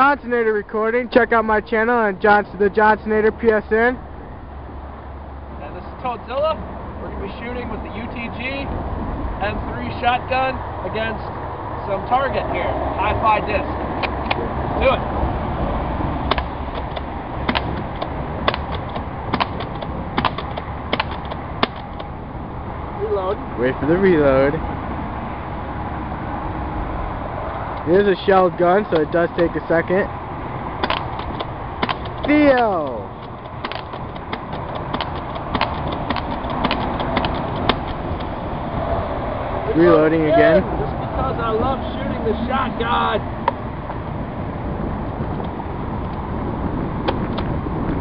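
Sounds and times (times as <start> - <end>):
wind on microphone: 6.6 - 48.0
airsoft shotgun clacks: 16.3 - 22.1, 30.8 - 38.0.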